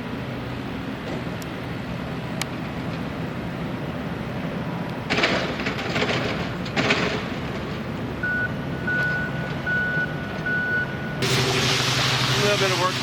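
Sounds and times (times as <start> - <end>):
running engine hum: 0.0 - 13.0
truck reversing alarm beeping: 8.2 - 11.9.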